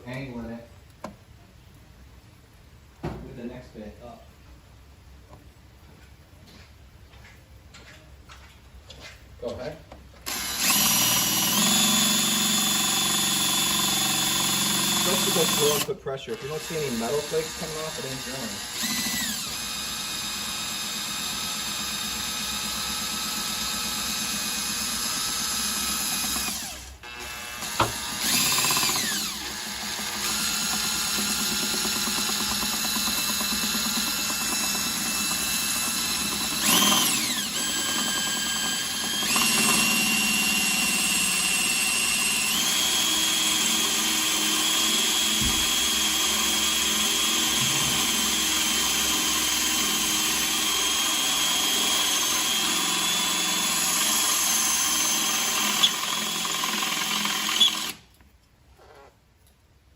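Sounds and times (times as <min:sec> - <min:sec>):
electric drill into sheet metal: 0:10.3 - 0:58.1.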